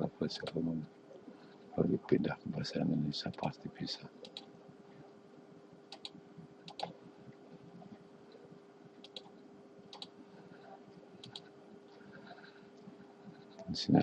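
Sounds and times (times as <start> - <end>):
faint electrical hum: 0.0 - 14.0
computer mouse clicking: 4.2 - 4.5, 5.9 - 7.0, 9.0 - 10.2, 11.2 - 11.5.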